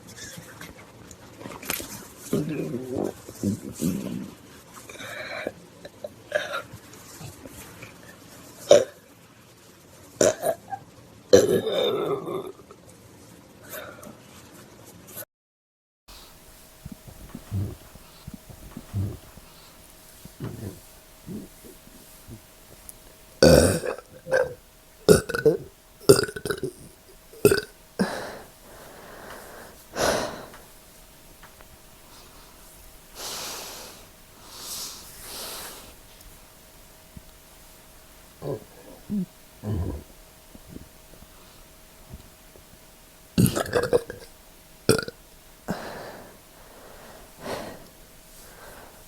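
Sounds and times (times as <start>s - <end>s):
person burping: 10.2s - 10.6s, 11.4s - 12.5s, 17.0s - 19.4s, 20.4s - 22.4s, 23.4s - 28.8s, 38.4s - 40.9s, 43.4s - 44.3s, 44.9s - 46.2s.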